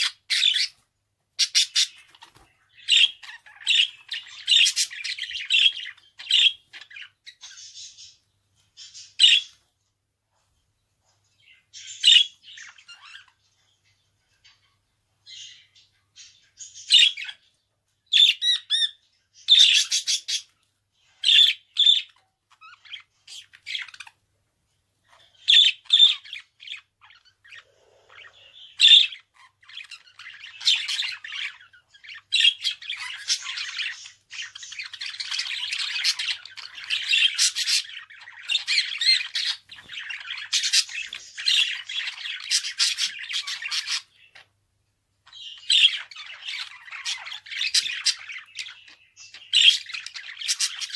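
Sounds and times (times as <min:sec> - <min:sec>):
budgerigar chirps and squawks: 0:00.0 - 0:00.8, 0:01.4 - 0:08.2, 0:15.3 - 0:17.5, 0:18.1 - 0:20.6, 0:21.2 - 0:24.2, 0:25.4 - 0:44.5, 0:45.2 - 0:50.9.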